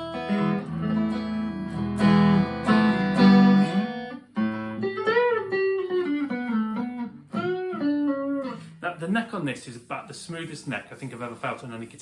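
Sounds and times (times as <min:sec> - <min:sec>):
electric guitar note bends: 0:00.0 - 0:04.2
electric guitar strummed chords: 0:00.0 - 0:08.8.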